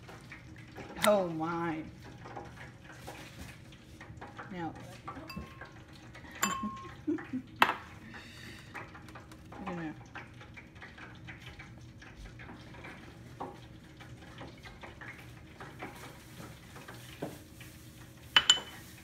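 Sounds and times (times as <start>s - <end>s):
utensils clinking and scraping dishes: 4.8s - 5.8s, 6.4s - 7.0s, 18.2s - 19.0s.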